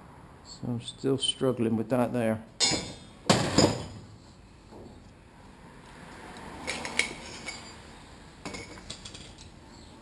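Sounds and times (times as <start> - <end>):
metal tools clinking: 2.6 - 4.0, 6.6 - 9.9.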